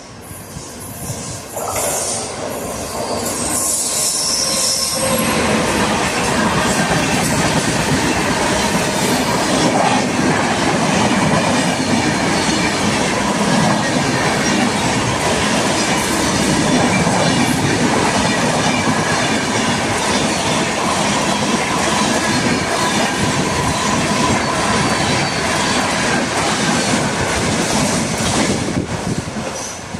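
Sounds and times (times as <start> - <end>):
steel wheels rushing on rail: 0.0 - 29.9
faint wavering wheel squeal: 2.8 - 5.3.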